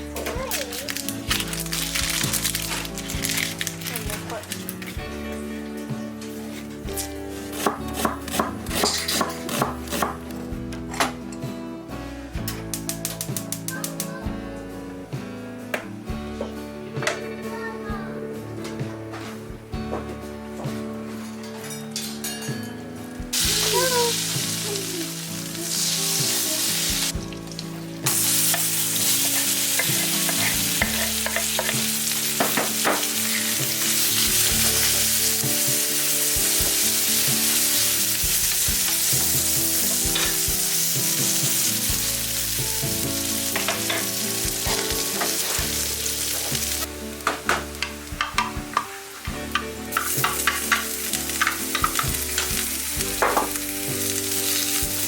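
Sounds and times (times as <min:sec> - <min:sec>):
food sizzling in a pan: 0:00.0 - 0:05.0, 0:23.3 - 0:55.0.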